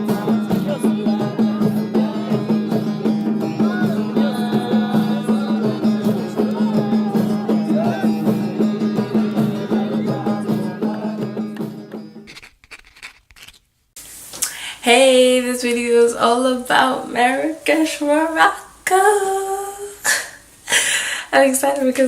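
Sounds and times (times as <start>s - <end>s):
hand percussion: 0.0s - 12.4s.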